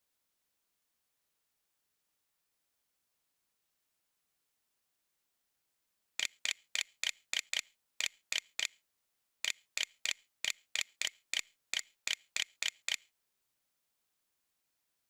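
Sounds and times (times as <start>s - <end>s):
computer mouse clicking: 6.2s - 8.8s, 9.4s - 13.1s.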